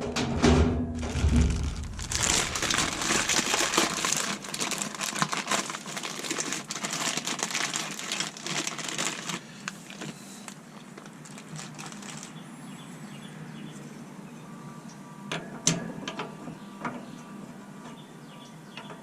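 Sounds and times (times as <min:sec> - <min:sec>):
plastic packaging crinkling: 0:01.0 - 0:12.4.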